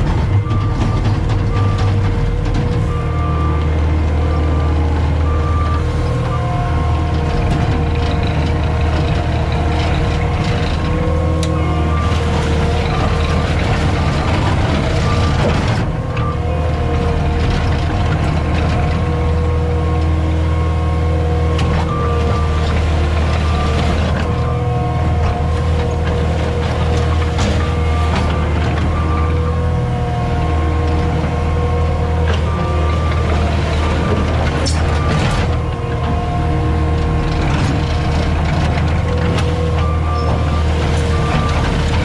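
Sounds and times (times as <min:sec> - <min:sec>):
diesel engine running hard: 0:00.0 - 0:42.0
backup alarm beeping: 0:00.3 - 0:07.6, 0:27.4 - 0:30.0.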